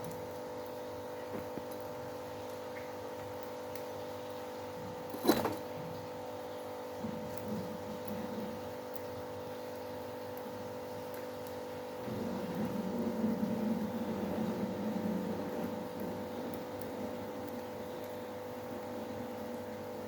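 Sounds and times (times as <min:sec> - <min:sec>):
machine hum: 0:04.6 - 0:20.0.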